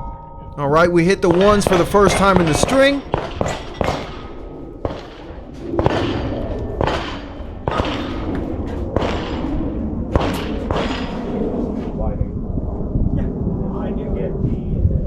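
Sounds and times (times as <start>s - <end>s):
rifle gunshots with echo: 0.8s - 11.4s.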